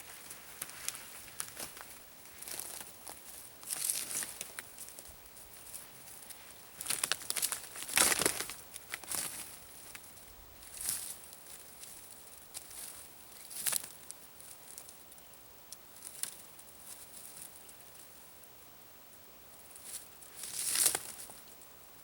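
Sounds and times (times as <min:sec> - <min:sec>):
crinkling and rustling: 0:00.0 - 0:11.9, 0:19.8 - 0:21.4.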